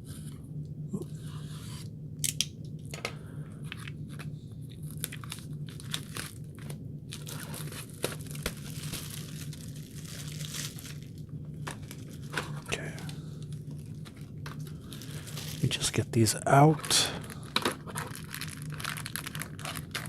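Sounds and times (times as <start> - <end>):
steady low hum: 0.0 - 20.0
plastic wrap tearing and crinkling: 3.7 - 12.8, 13.4 - 20.0.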